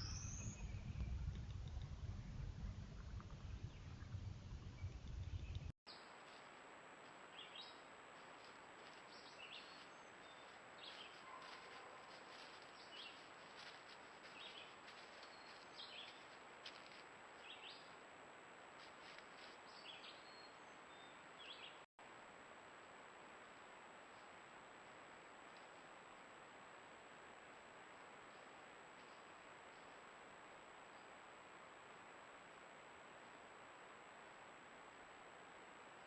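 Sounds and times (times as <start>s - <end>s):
faint bird chirps: 0.0s - 6.0s, 19.7s - 21.8s
microphone hiss: 21.2s - 36.0s.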